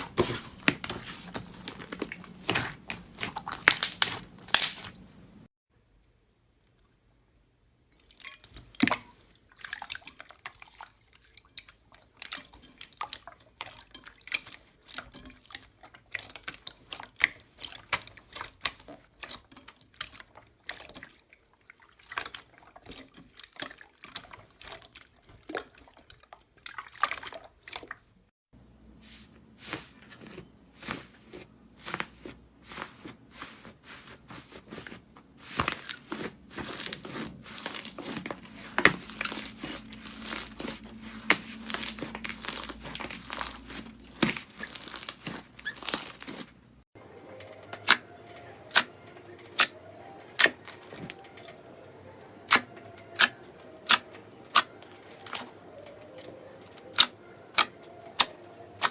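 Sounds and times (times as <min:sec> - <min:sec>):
slime squeezed with wet pops: 0:00.0 - 0:05.0.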